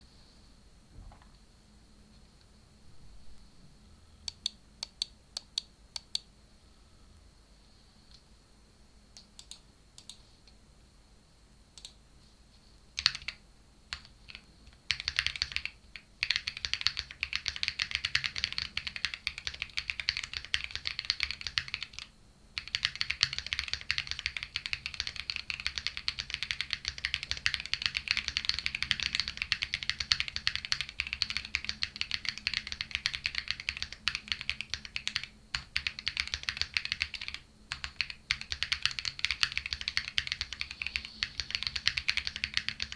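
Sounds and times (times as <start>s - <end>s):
mechanical keyboard typing: 13.0s - 42.9s.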